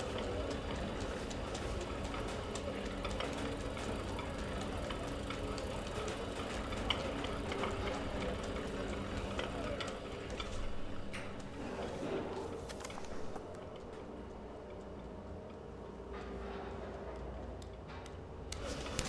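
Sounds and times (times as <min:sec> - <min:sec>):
small clicks and ticks: 0:00.0 - 0:11.6
steady mechanical hum: 0:00.0 - 0:19.0.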